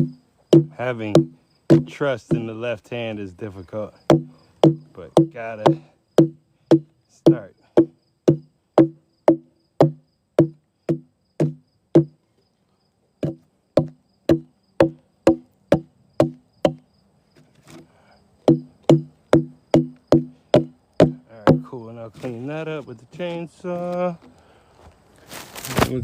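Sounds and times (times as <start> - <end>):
hatchet chopping into log: 0.0 - 2.5, 4.1 - 12.2, 13.2 - 16.8, 18.5 - 21.7.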